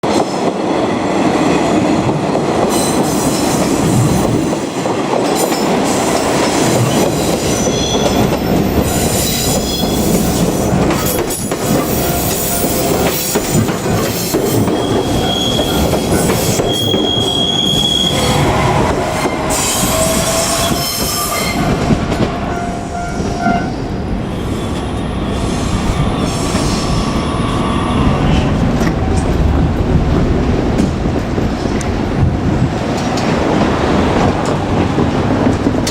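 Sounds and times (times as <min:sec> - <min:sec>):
train wheels rumbling on rails: 0:00.0 - 0:35.9
wheel squeal: 0:14.5 - 0:22.2.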